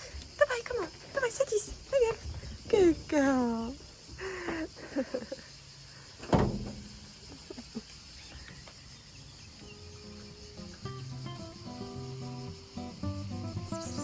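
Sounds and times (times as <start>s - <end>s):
insect chirring: 0.0s - 14.0s
soft music: 9.6s - 14.0s.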